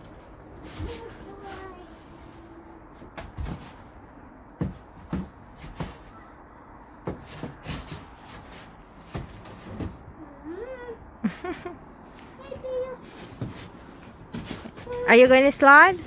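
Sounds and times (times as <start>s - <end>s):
dull thumps and knocks: 3.0s - 6.2s, 7.0s - 10.2s, 12.6s - 16.0s.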